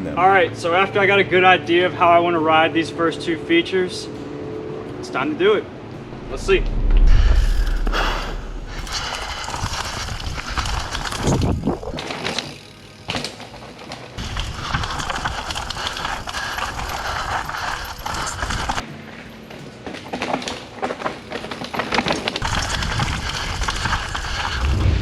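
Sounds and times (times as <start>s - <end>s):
bike tyres over rock and dirt: 7.5s - 25.0s
bike clattering and knocking: 12.0s - 17.6s, 19.8s - 23.9s.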